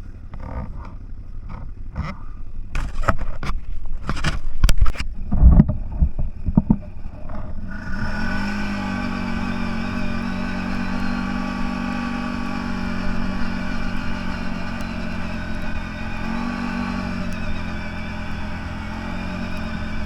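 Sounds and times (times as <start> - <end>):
vehicle engine running: 0.0 - 20.0
vehicle knocks and thumps: 0.2 - 7.7.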